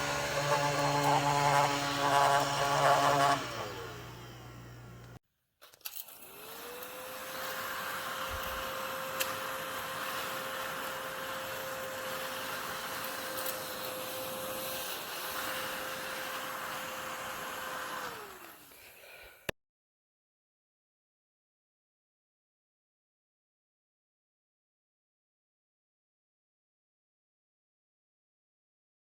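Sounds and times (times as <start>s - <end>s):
small vacuum motor whining: 0.0s - 5.2s, 5.9s - 18.9s.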